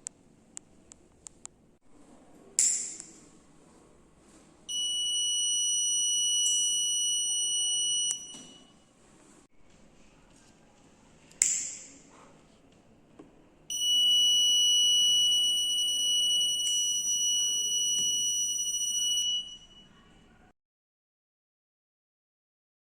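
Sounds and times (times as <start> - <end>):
high-pitched alarm buzzer: 4.7 - 8.7, 13.7 - 19.9.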